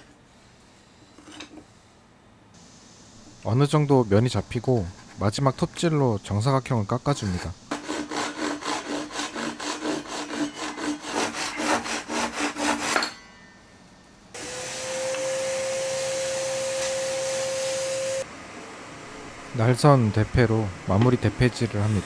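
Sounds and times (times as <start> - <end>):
steady hum with whine: 0.8 - 7.7, 15.6 - 22.0
hand saw cutting wood: 7.1 - 13.1.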